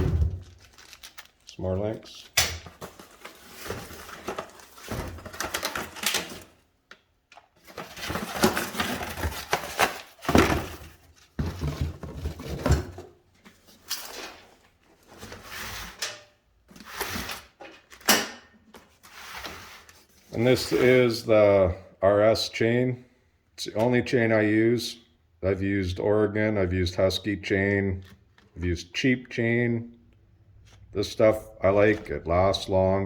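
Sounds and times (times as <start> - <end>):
cardboard and packets rustling: 0.0 - 16.0, 30.5 - 32.7.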